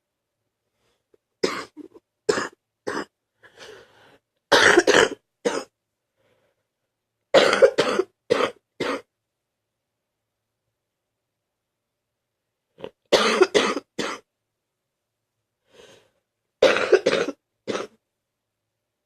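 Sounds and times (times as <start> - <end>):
person coughing wet coughs: 1.4 - 3.1, 4.5 - 5.7, 7.3 - 9.1, 13.1 - 14.2, 16.6 - 17.9.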